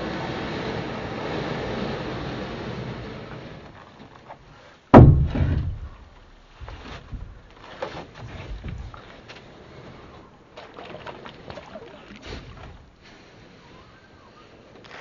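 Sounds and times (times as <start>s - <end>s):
loud thump: 4.9s - 7.5s.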